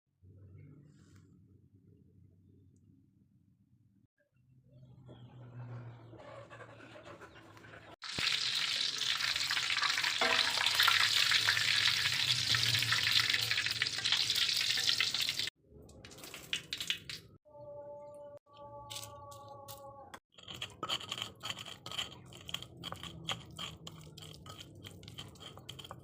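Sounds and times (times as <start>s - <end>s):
food sizzling in hot oil: 8.0s - 15.5s.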